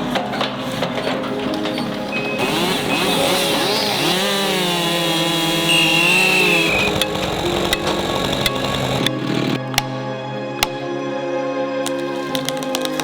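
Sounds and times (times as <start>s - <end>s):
chainsaw engine revving: 0.0s - 9.9s.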